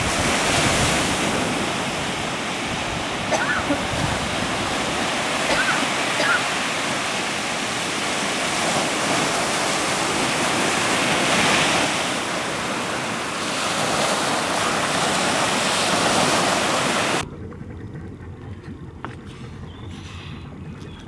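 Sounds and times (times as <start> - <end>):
rushing water: 0.0 - 17.3
low rumble: 17.2 - 21.0.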